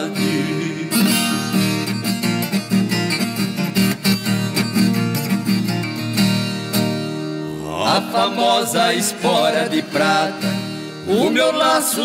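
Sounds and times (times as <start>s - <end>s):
strummed guitar chords: 0.0s - 12.0s
plucked string notes: 0.2s - 7.6s.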